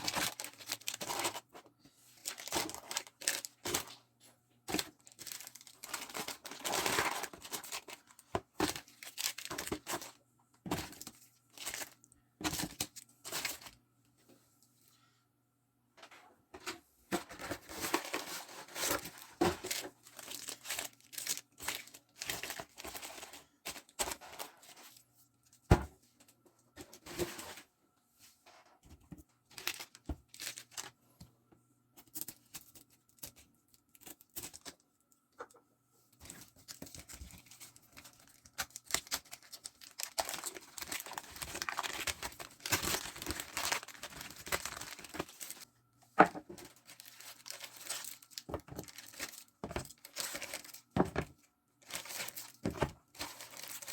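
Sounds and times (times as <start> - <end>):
packaging crinkling and tearing: 0.0 - 1.5, 2.2 - 4.0, 4.7 - 10.2, 17.3 - 24.9, 29.5 - 30.9, 36.2 - 45.7, 46.5 - 53.9.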